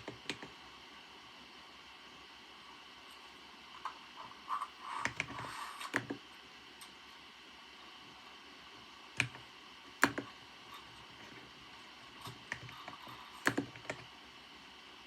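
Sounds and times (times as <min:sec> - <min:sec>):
keyboard keys tapping: 0:00.0 - 0:00.5, 0:09.2 - 0:09.4, 0:10.0 - 0:10.3, 0:12.2 - 0:14.1.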